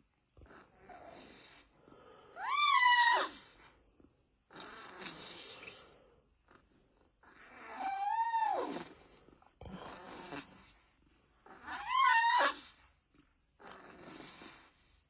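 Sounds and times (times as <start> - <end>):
kitten snoring: 0.4 - 1.7, 4.5 - 5.9, 7.2 - 12.7, 13.6 - 15.0.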